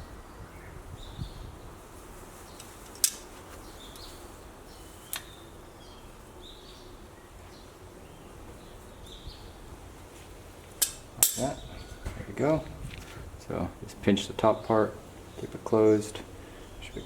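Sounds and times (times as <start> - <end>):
metal clip clicking shut: 10.8 - 11.5.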